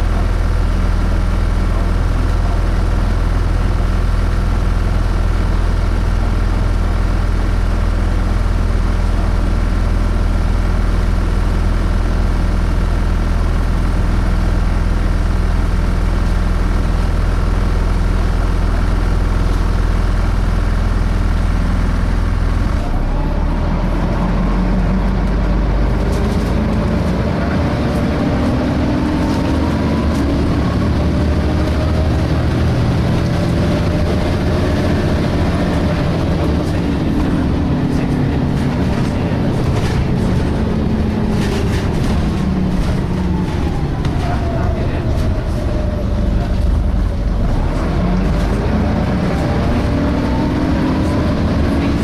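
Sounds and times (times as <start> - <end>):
bus engine idling and whining: 0.0 - 52.0.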